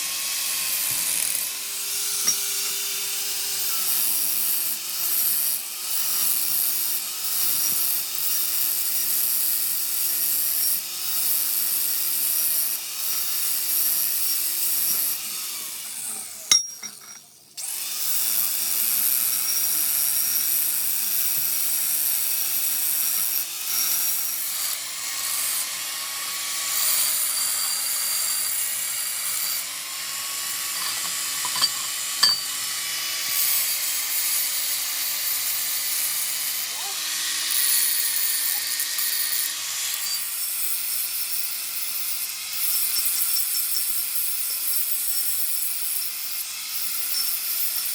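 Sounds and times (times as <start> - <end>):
power tool motor humming: 0.0 - 47.9
high hissing grinding noise: 30.5 - 33.6, 37.5 - 47.9.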